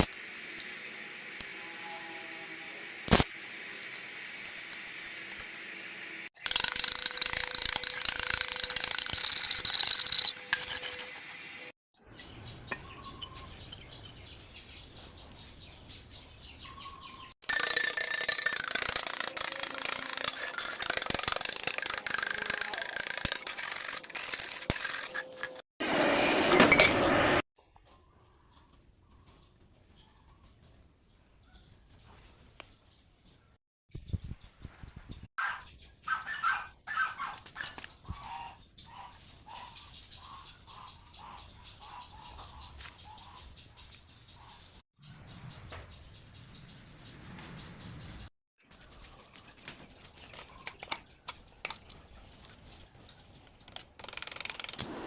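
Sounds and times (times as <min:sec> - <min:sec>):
hand-cranked gears rattling: 0:06.4 - 0:11.2, 0:17.4 - 0:25.6.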